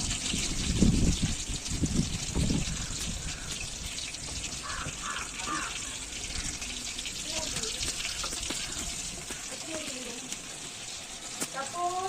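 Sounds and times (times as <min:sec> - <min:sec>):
tap water running and splashing: 0:00.0 - 0:12.0.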